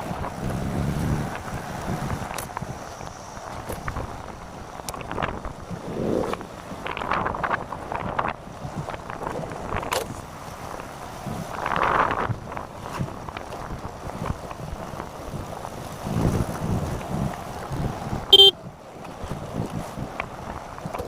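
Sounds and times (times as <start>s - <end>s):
wind buffeting microphone: 0.0s - 21.0s
short loud beep: 18.3s - 18.6s.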